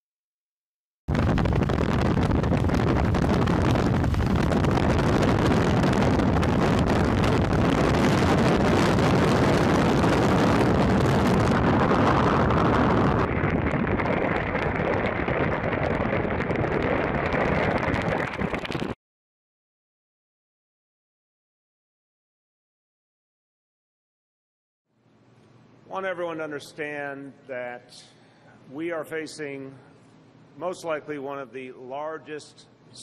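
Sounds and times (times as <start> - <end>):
wind buffeting microphone: 1.1 - 19.0.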